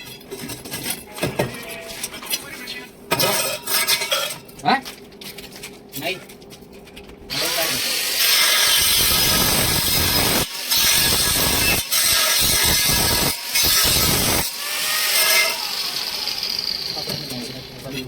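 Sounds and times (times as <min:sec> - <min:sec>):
power tool running on steel: 0:07.3 - 0:18.0.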